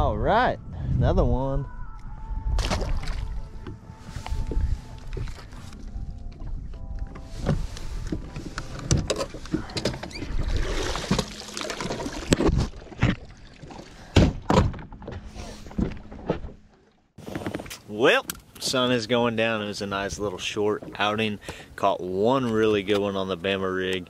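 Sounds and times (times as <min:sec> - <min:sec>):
knocks and thumps on a boat: 0:07.4 - 0:16.7.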